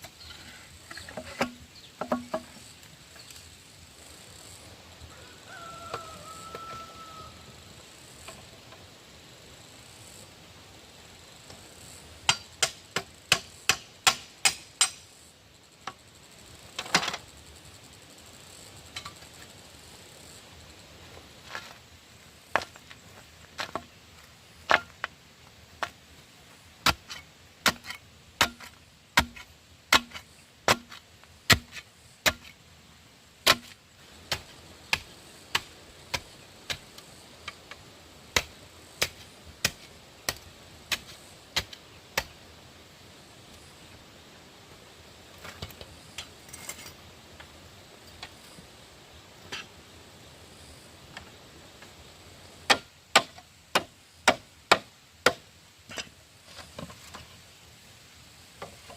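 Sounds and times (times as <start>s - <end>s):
hand tool striking wood: 0.9s - 2.6s, 12.3s - 15.0s, 26.8s - 32.6s, 33.4s - 36.8s, 52.7s - 56.1s.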